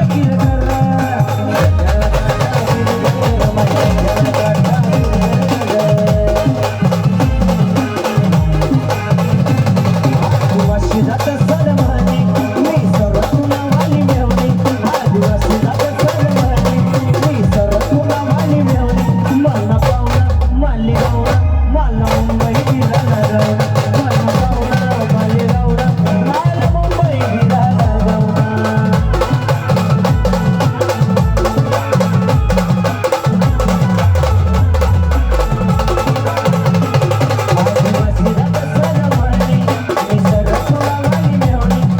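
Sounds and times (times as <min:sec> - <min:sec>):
drums fast steady beat: 0:00.0 - 0:41.9
brass band playing: 0:01.8 - 0:10.4, 0:29.0 - 0:38.6.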